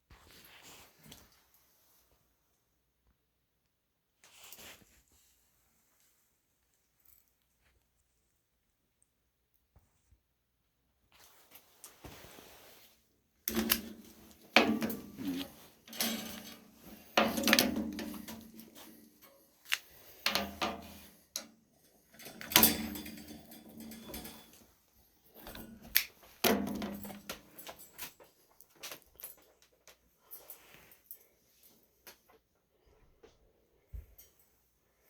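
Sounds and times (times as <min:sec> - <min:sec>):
knocks and clatter of objects: 0:13.5 - 0:21.5, 0:22.2 - 0:24.7, 0:25.3 - 0:29.6.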